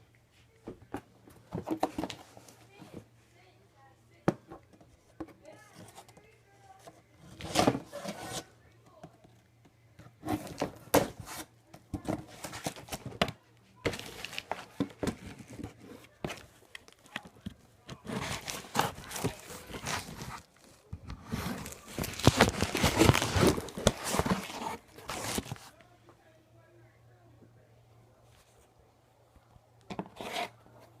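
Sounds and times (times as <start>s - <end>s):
packaging crinkling and rustling: 13.9s - 25.8s
tape and cardboard tearing: 18.0s - 25.6s.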